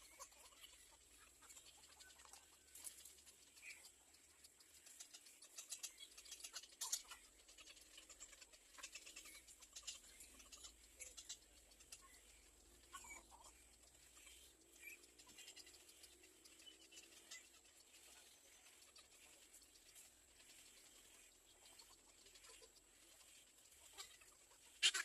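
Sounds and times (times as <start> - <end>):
nestling birds rustling and ticking: 0.0 - 25.0
soft bird chirp: 0.0 - 25.0.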